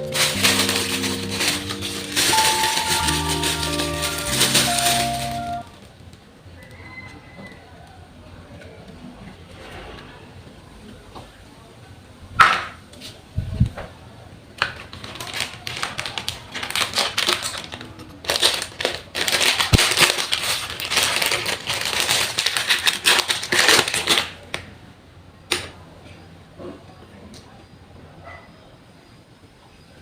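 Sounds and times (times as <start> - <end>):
packaging crinkling and rustling: 0.0 - 5.9, 14.6 - 24.6.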